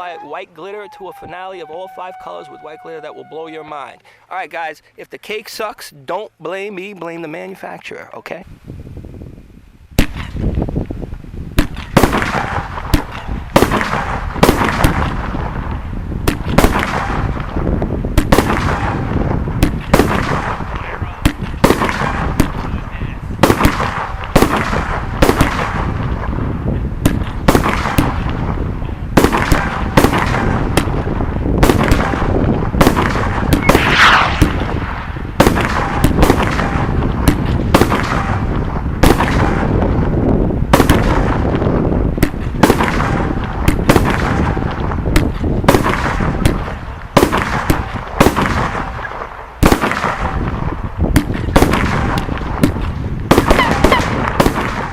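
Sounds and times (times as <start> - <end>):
fireworks bangs: 11.6 - 54.9
low rumble: 33.3 - 40.3.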